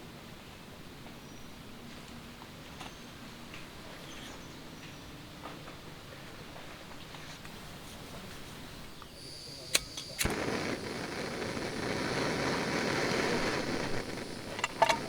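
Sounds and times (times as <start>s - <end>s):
steady rushing hiss: 6.1s - 15.0s
sharp clicks: 9.0s - 15.0s.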